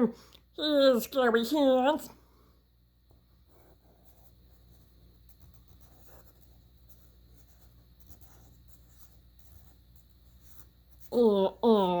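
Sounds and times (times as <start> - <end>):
low steady hum: 0.0 - 12.0
pen scratching on paper: 3.4 - 11.2.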